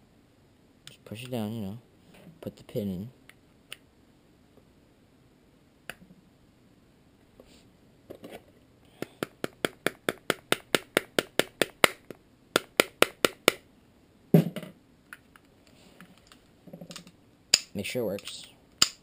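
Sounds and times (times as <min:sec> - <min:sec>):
sharp clicks of pistol parts: 0:16.2 - 0:19.0.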